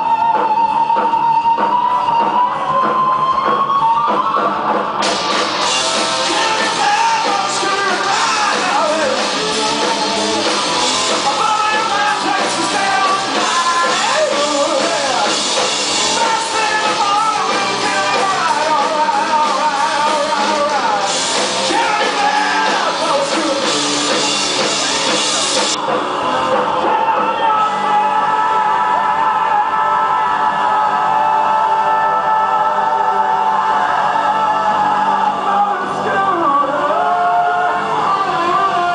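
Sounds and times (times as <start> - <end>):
electric guitar lead: 0.0 - 29.2
live rock band playing: 0.0 - 38.9.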